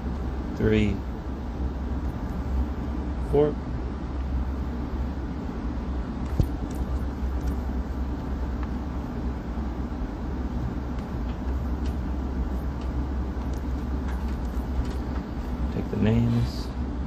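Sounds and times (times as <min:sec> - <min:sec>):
low background hum: 0:00.0 - 0:17.0.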